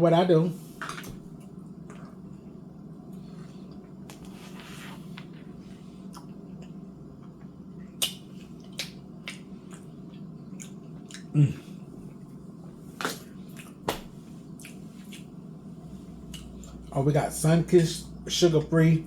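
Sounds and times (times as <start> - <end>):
low room hum: 0.0 - 19.0
chewing with wet smacks: 1.8 - 2.5, 6.0 - 15.4, 16.1 - 17.0.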